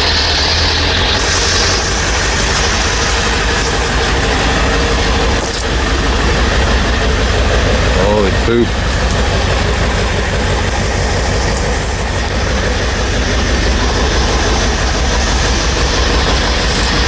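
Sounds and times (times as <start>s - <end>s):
diesel engine clattering: 0.0s - 17.0s.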